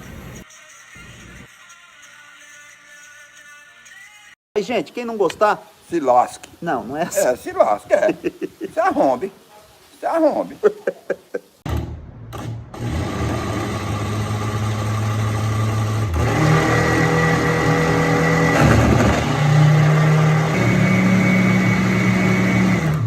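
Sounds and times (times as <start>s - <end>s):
blender running: 12.8s - 23.0s.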